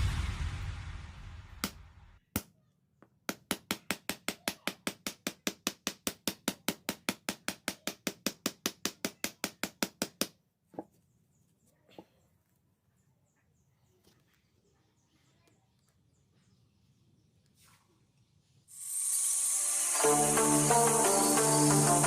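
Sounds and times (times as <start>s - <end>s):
music: 18.9s - 22.0s.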